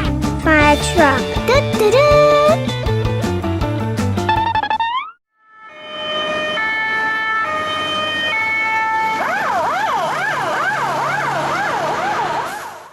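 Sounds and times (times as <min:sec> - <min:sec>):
fire engine siren: 0:04.8 - 0:12.9.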